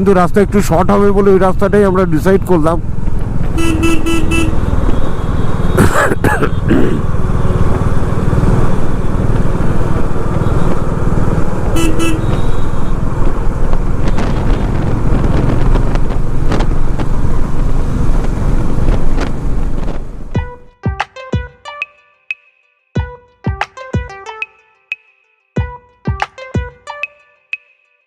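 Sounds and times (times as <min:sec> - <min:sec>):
motorcycle engine and road noise: 0:00.0 - 0:20.7
vehicle horn toot: 0:03.6 - 0:05.9, 0:11.7 - 0:13.0
wind rush: 0:07.0 - 0:20.4.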